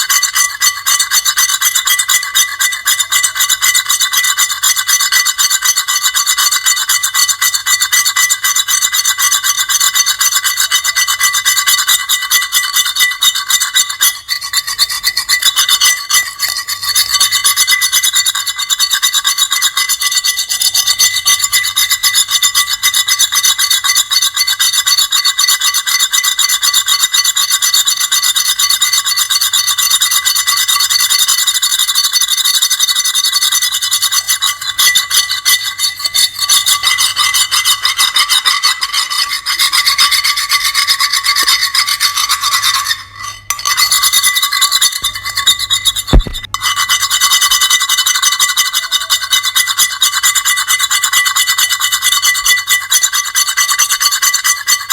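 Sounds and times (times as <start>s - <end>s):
high-pitched grating scraping: 33.7s - 46.5s.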